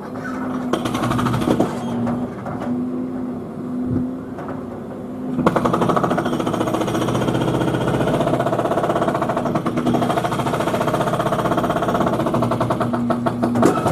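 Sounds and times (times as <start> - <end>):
jackhammer through walls: 0.2 - 2.6, 5.4 - 13.9.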